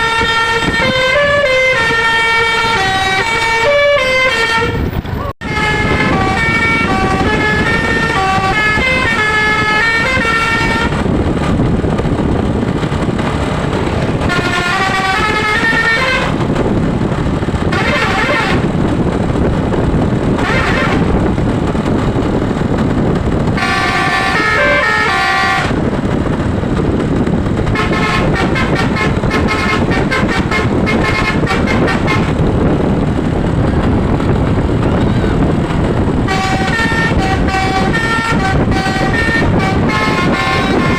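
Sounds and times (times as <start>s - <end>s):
musical air horn tunes: 0.0s - 11.0s, 14.2s - 16.5s, 17.7s - 18.8s, 20.4s - 21.2s, 23.6s - 25.8s, 27.7s - 32.4s, 36.2s - 40.9s
steady loud rumble: 0.0s - 40.9s.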